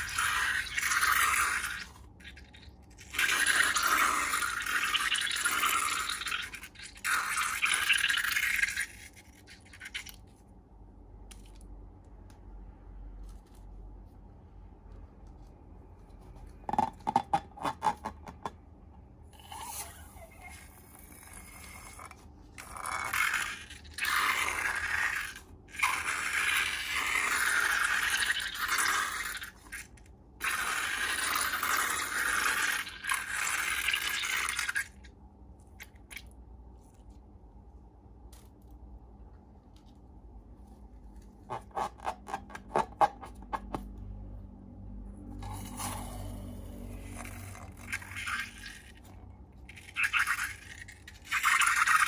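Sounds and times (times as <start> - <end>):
slime scraping: 39.7 - 43.9.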